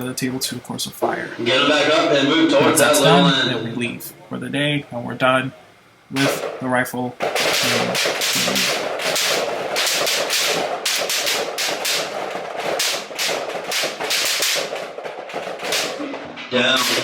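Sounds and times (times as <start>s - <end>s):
rifle shots: 6.2s - 17.0s.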